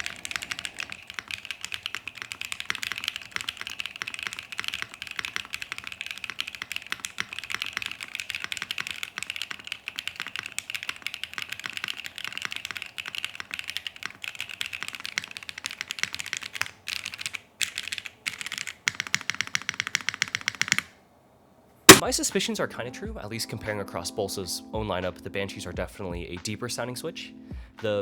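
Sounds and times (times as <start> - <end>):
mechanical keyboard typing: 0.0 - 20.9.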